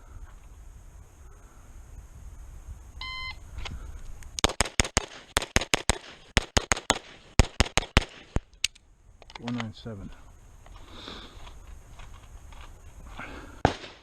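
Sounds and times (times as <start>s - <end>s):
rapid pistol shots: 4.4s - 8.4s, 13.6s - 14.0s.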